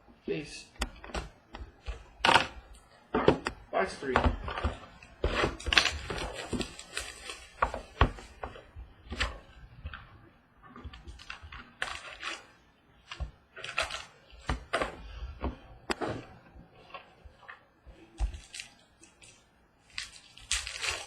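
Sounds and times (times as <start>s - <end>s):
foil packs crinkling and tearing: 5.1s - 8.4s, 10.9s - 12.5s, 18.2s - 21.0s.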